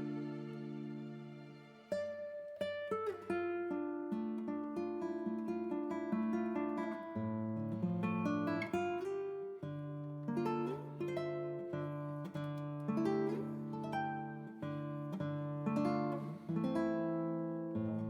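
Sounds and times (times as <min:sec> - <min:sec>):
acoustic guitar chords: 0:00.0 - 0:18.0.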